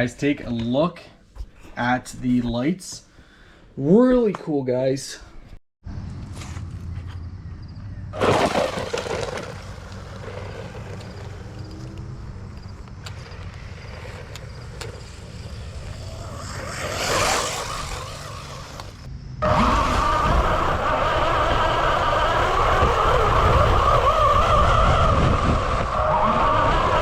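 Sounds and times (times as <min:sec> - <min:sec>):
toy truck tyres scraping ground: 0:08.2 - 0:27.0
electric motor whine: 0:10.6 - 0:27.0.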